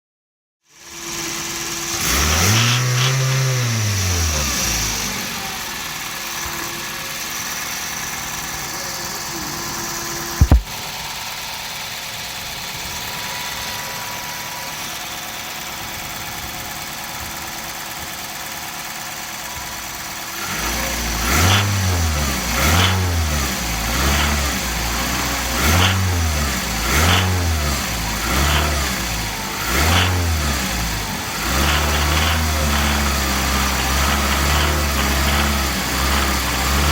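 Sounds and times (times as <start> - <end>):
car engine knocking and revving: 0.9 - 36.9
loud bump: 10.4 - 10.8.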